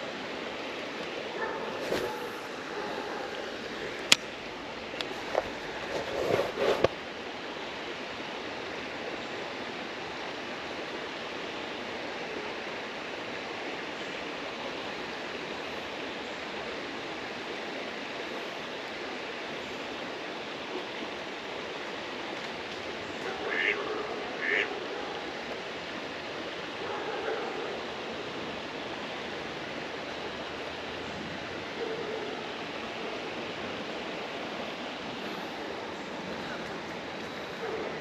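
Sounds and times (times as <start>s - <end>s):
creek water running: 0.0s - 38.0s
duck quack: 23.3s - 24.7s.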